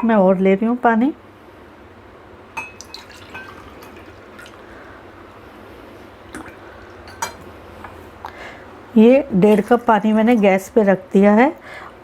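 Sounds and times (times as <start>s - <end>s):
water dripping: 2.6s - 5.4s, 6.2s - 8.4s
water poured into frying pan: 2.8s - 4.8s.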